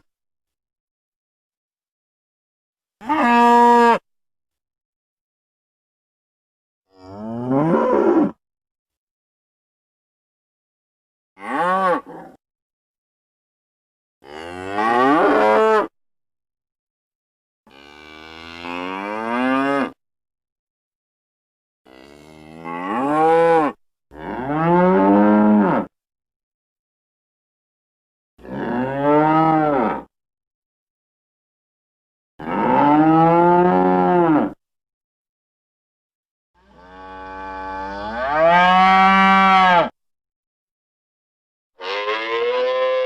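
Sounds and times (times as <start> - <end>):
cow mooing: 6.9 - 8.3, 11.4 - 12.4, 14.2 - 15.9, 21.9 - 25.9, 28.4 - 30.1, 32.4 - 34.6, 36.6 - 40.0, 41.8 - 43.0.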